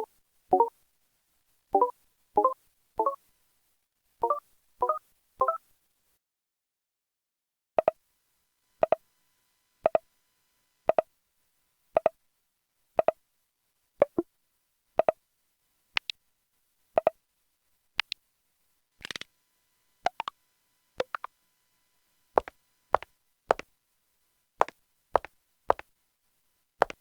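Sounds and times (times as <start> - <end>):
double-blip electronic beeps: 0.0 - 0.7, 1.8 - 3.2, 4.2 - 5.6.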